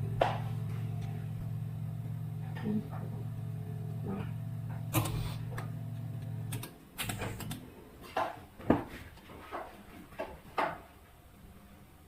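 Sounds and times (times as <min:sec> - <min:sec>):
low electrical buzz: 0:00.0 - 0:08.6.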